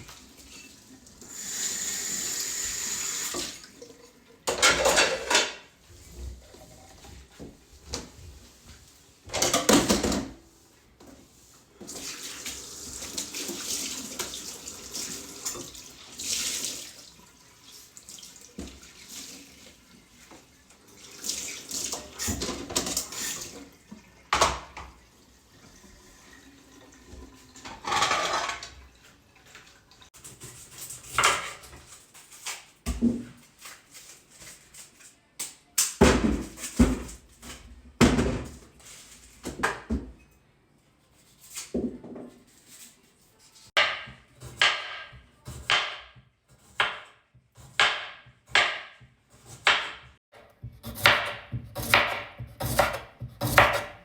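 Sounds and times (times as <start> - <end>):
tap water running into sink: 0.0 - 4.9, 11.8 - 30.1
knocks and clatter in sink: 4.5 - 5.6, 9.3 - 10.4, 24.3 - 25.0, 27.6 - 28.8, 36.0 - 38.8.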